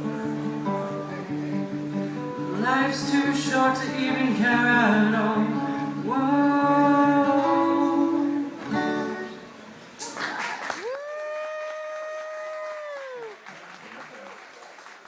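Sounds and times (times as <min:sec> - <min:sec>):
strummed acoustic guitar: 0:00.0 - 0:10.0.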